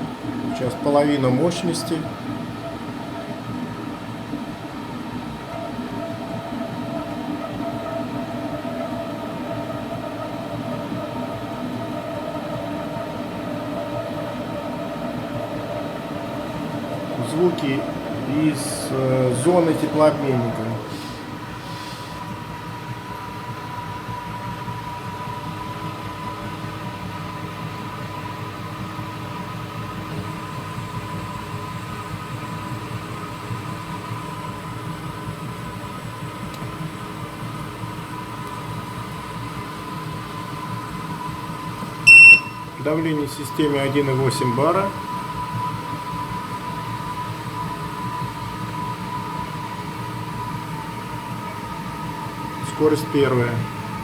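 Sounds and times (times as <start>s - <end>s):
gas boiler rumbling: 0.0s - 54.0s
thin steady whistle: 42.0s - 42.8s.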